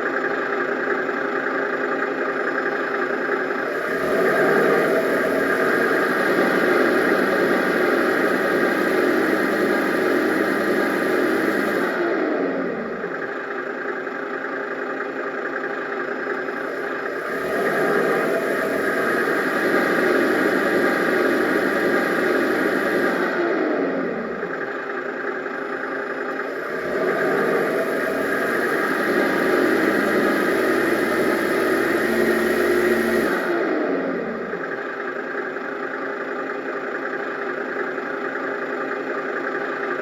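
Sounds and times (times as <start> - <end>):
simulated engine sound from speaker: 0.0 - 40.0.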